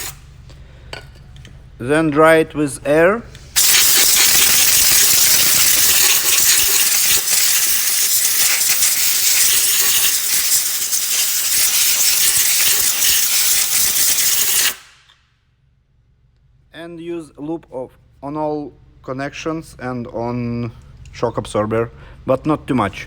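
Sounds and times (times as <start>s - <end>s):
compressed air hissing: 0.0s - 0.4s, 3.4s - 15.2s.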